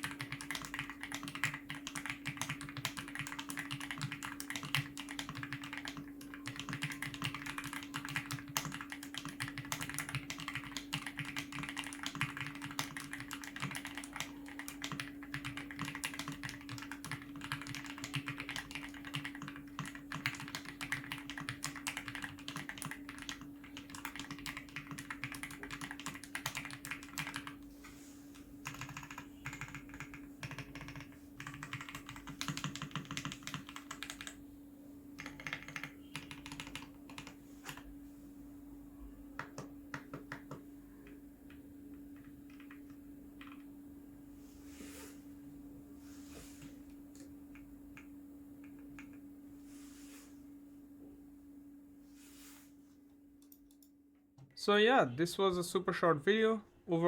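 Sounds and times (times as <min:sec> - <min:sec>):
mechanical keyboard typing: 0:00.0 - 0:27.6, 0:28.6 - 0:34.4, 0:35.2 - 0:37.9, 0:42.1 - 0:43.6.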